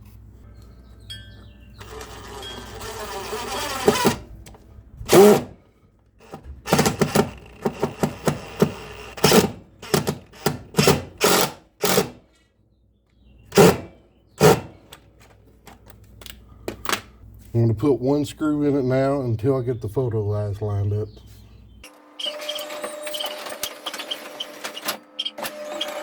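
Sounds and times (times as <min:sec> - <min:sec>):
impact driver driving screw: 0:01.8 - 0:04.3, 0:05.1 - 0:05.6, 0:06.2 - 0:12.2, 0:13.5 - 0:14.9
clunks: 0:01.8 - 0:05.6, 0:06.2 - 0:12.3, 0:13.5 - 0:15.8.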